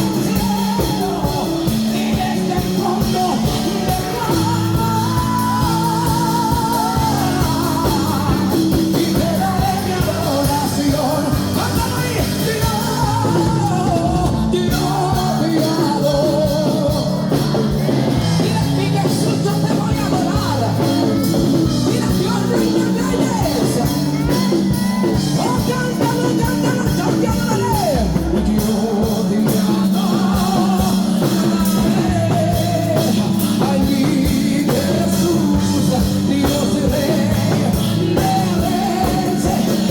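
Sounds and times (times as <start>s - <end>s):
woman singing with vibrato: 0.0s - 17.4s
worship band with drums: 0.0s - 39.9s.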